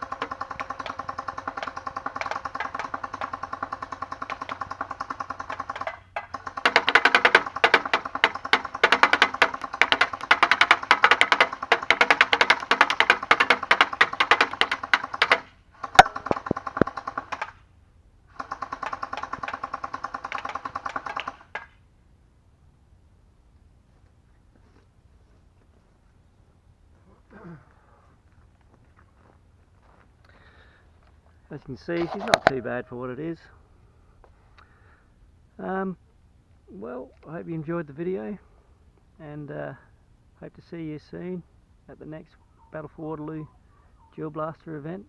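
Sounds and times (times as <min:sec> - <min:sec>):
gel blaster firing full auto: 0:00.0 - 0:17.6, 0:18.4 - 0:21.5.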